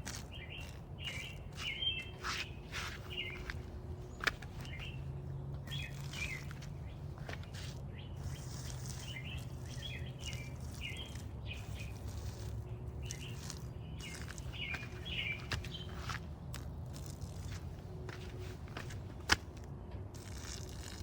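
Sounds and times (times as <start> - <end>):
songbird chirping: 0.0 - 16.6.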